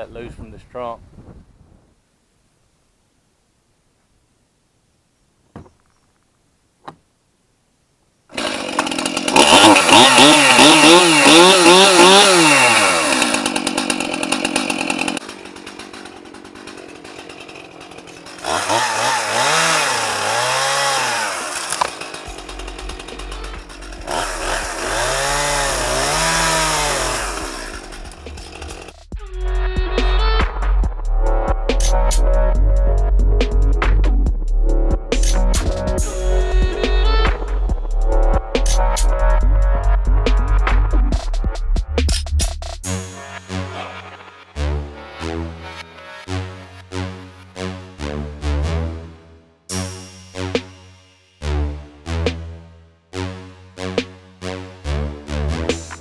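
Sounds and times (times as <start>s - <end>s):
chainsaw revving and cutting: 8.3s - 29.1s, 35.2s - 39.2s.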